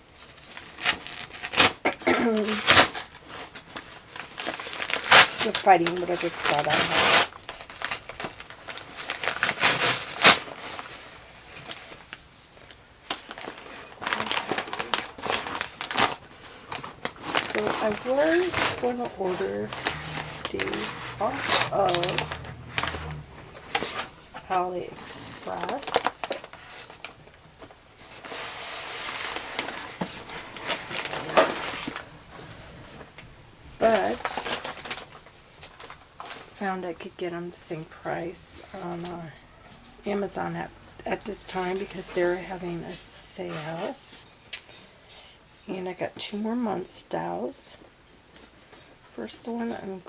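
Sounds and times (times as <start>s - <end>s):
packaging bag crinkling: 13.0s - 33.2s, 33.8s - 36.6s.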